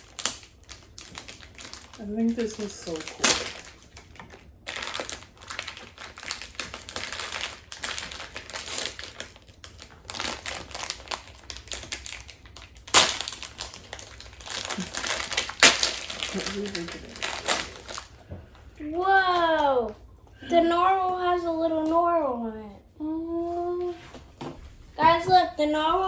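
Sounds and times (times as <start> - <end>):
plastic packaging crinkling: 0.0 - 18.7.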